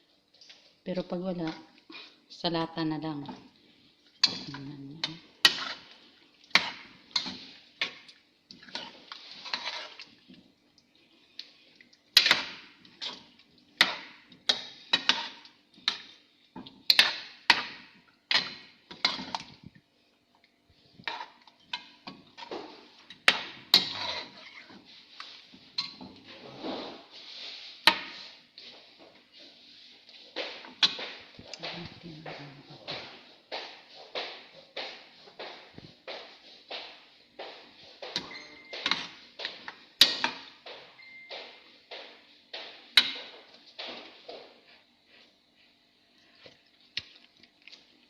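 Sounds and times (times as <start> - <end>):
metal utensil scraping cookware: 5.4 - 5.9, 8.6 - 10.0, 23.2 - 24.8, 25.8 - 27.1.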